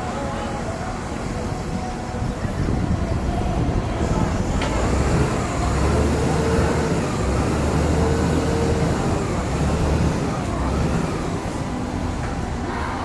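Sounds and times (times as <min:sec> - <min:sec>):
engine rumbling: 0:02.6 - 0:13.0.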